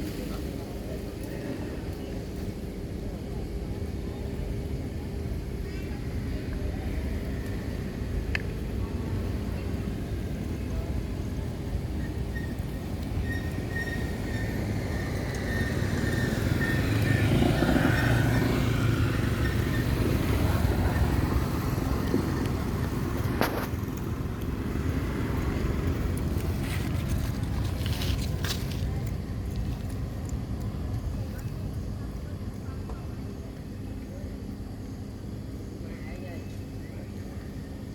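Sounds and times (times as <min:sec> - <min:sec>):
traffic rumble: 0:00.0 - 0:37.9
vehicle passing by: 0:15.1 - 0:28.2.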